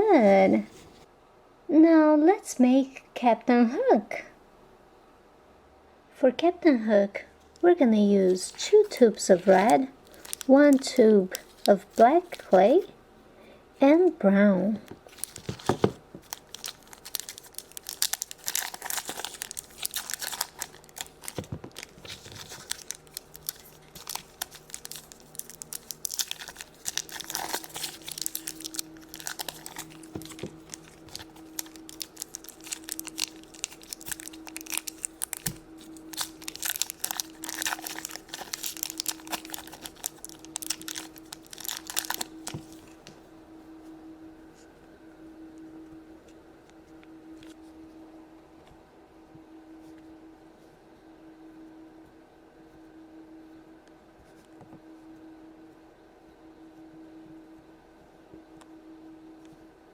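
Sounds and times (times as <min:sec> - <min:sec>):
faint steady hum: 0:00.0 - 0:59.9
crinkling and small clicks: 0:08.4 - 0:12.6, 0:14.8 - 0:43.2.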